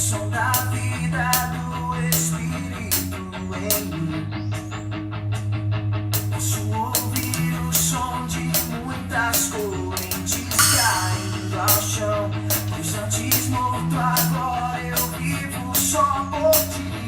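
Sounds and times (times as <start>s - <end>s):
rock song with guitar and bass: 0.0s - 17.0s
drum kit hits: 9.4s - 12.8s
cymbal wash: 10.5s - 12.8s.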